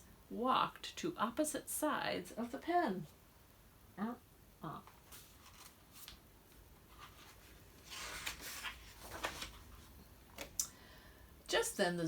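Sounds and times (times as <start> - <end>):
paper page rustling: 4.9 - 10.6.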